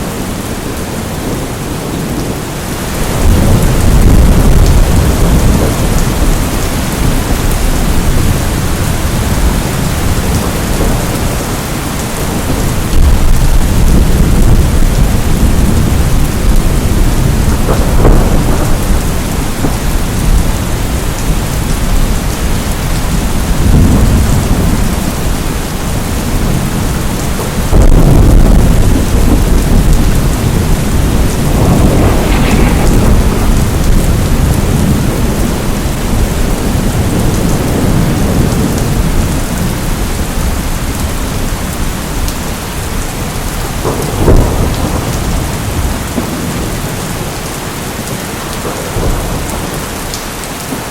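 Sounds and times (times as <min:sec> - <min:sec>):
thunder rumbling: 0:00.0 - 0:50.8
heavy rain: 0:00.0 - 0:50.9
sharp thunder clap: 0:12.4 - 0:20.7, 0:27.6 - 0:39.3, 0:43.8 - 0:46.7.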